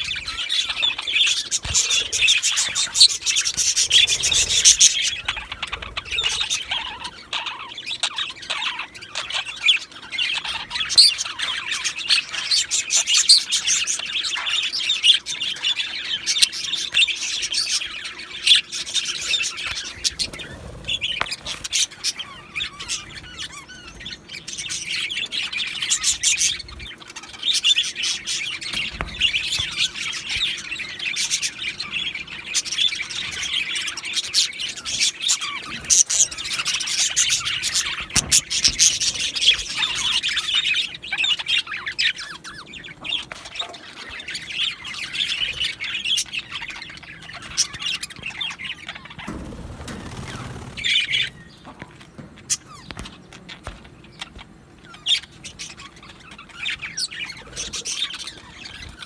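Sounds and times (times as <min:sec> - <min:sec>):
budgerigars chirping: 0:00.0 - 0:59.0.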